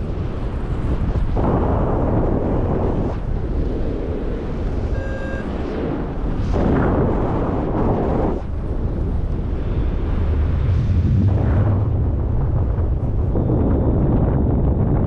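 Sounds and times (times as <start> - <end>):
wind buffeting microphone: 0.0 - 15.0
short electronic beep: 4.9 - 5.5.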